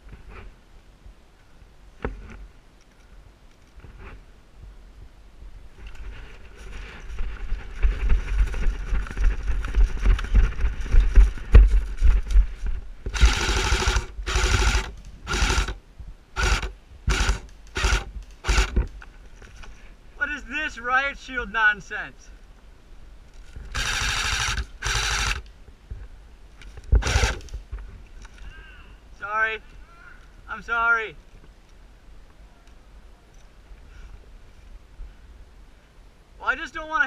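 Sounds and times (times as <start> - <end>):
rough rustling: 1.9 - 4.5, 5.6 - 15.8
low thumps: 7.0 - 13.4
airsoft gun full-auto bursts: 13.1 - 15.8, 16.4 - 18.8, 23.7 - 25.5, 27.0 - 27.5.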